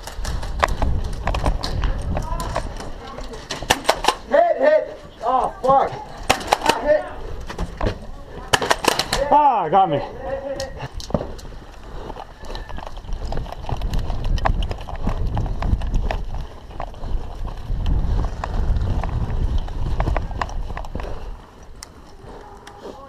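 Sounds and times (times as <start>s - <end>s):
footsteps: 0.0s - 23.0s
sharp clicks: 3.5s - 4.3s, 6.2s - 6.9s, 8.5s - 9.3s
gear rustling: 10.7s - 23.0s.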